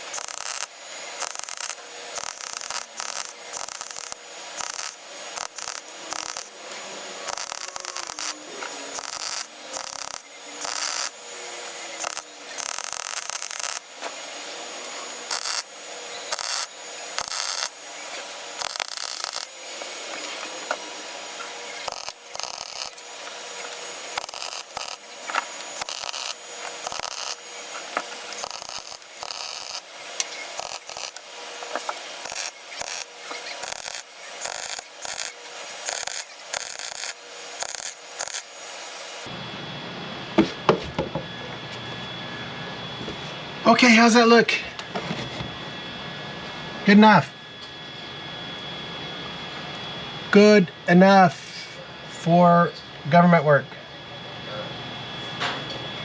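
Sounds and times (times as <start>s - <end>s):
crackling welding arc: 0.0s - 39.3s.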